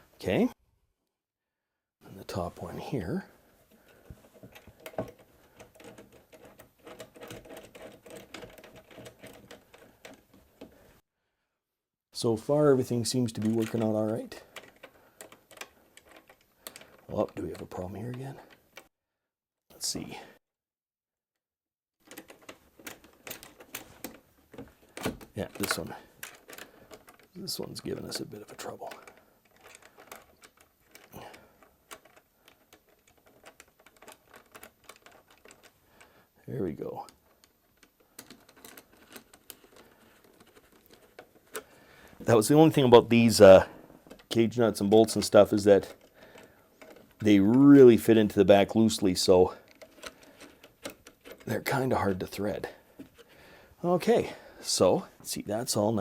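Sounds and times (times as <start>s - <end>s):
metallic clicking and rattling of screw: 4.2s - 10.8s, 13.4s - 17.7s, 22.0s - 27.4s, 28.0s - 35.8s, 37.1s - 41.7s, 49.6s - 51.5s.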